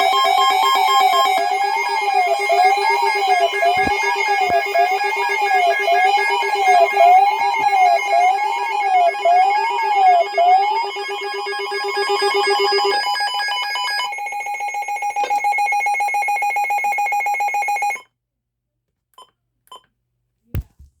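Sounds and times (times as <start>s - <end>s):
short thump: 20.6s - 21.0s.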